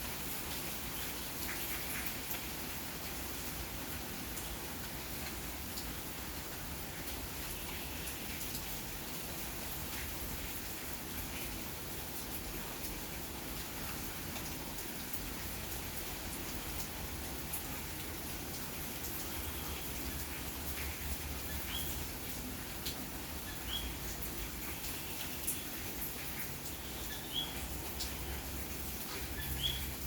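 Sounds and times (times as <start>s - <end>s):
rain falling: 0.0s - 30.0s
raindrop ticks: 16.4s - 30.0s.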